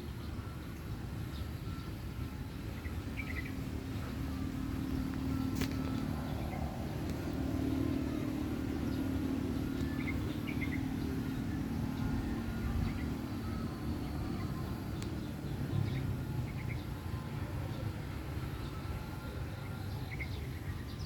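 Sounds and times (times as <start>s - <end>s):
low hum: 2.3s - 17.6s.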